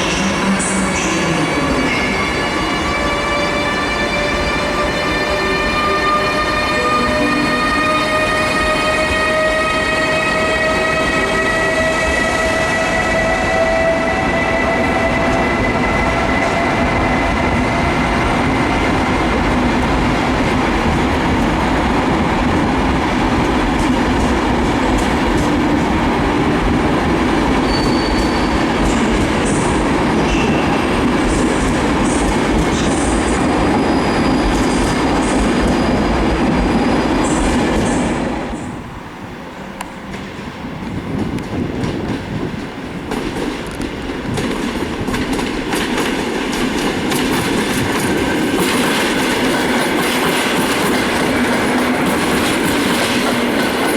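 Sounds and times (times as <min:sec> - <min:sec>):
train wheels rumbling and clattering: 0:00.0 - 0:38.8, 0:39.8 - 0:53.9
electric locomotive whine: 0:00.0 - 0:53.9
high wheel squeals: 0:27.6 - 0:29.0.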